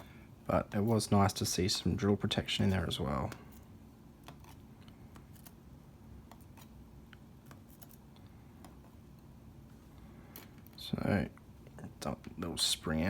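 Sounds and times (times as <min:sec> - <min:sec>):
low steady hum: 0:00.0 - 0:13.0.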